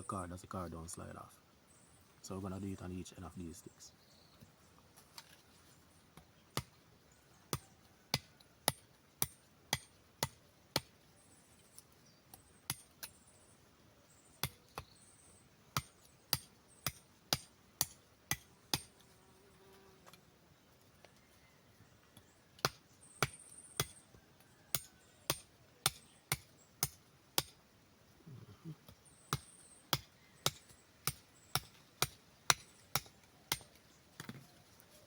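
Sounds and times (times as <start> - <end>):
blade chopping wooden sticks: 28.9 - 34.4.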